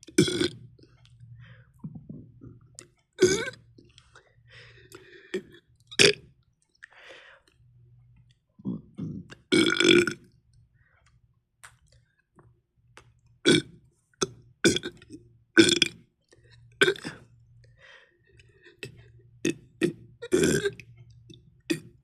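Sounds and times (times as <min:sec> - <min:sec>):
person burping: 0:00.1 - 0:00.6, 0:03.2 - 0:03.6, 0:05.3 - 0:06.2, 0:08.6 - 0:10.2, 0:13.5 - 0:13.7, 0:14.6 - 0:16.0, 0:16.8 - 0:17.3, 0:18.8 - 0:20.8.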